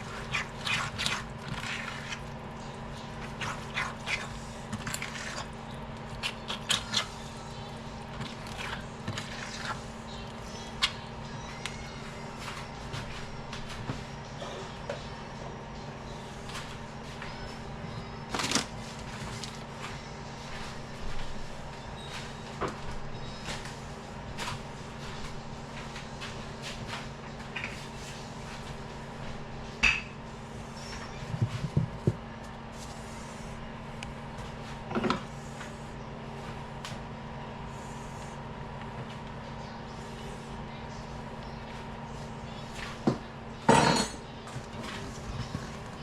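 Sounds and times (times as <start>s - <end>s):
steady low hum: 0.0s - 46.0s
utensils and containers clattering: 18.3s - 19.9s, 43.6s - 46.0s.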